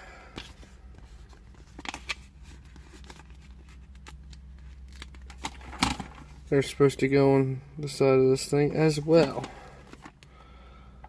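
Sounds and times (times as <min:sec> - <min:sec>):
clicks and rustles of handling: 0:00.3 - 0:06.3, 0:09.0 - 0:10.3.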